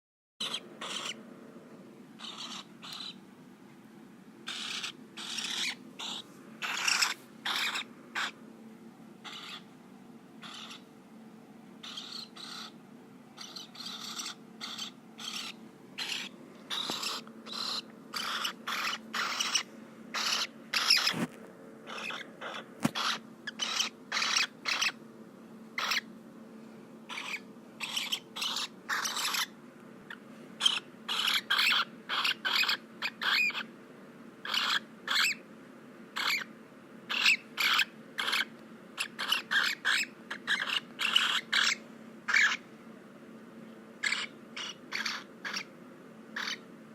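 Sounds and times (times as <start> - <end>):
cockatiel raspy calls: 0.4 - 1.2, 2.2 - 3.2, 4.4 - 8.4, 9.2 - 9.7, 10.4 - 10.9, 11.8 - 12.8, 13.4 - 25.0, 25.8 - 26.1, 27.1 - 33.7, 34.4 - 35.4, 36.2 - 36.5, 37.1 - 42.6, 44.0 - 45.7, 46.3 - 46.6.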